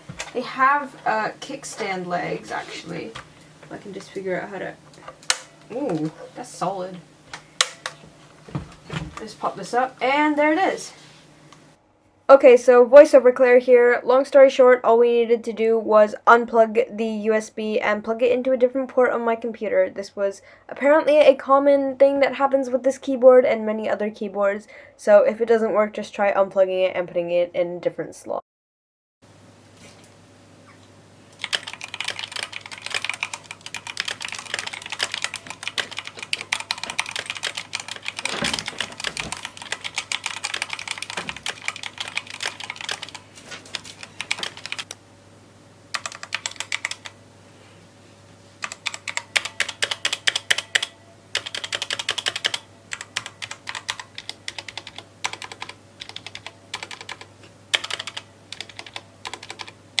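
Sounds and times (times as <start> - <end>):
mechanical keyboard typing: 31.4 - 45.0, 45.9 - 47.2, 48.6 - 60.0.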